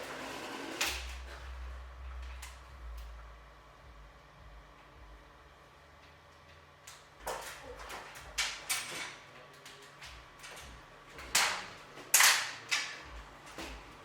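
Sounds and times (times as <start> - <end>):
tools knocking and clattering: 7.2 - 14.0.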